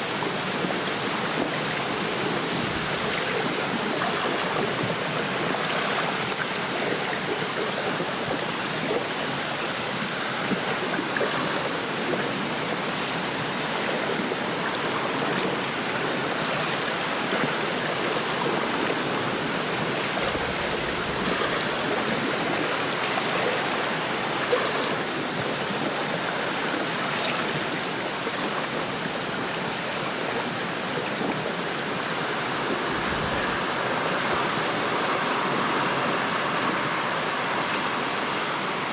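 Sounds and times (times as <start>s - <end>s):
small waves lapping: 0.0s - 38.9s
wind rushing through reeds: 32.3s - 38.9s.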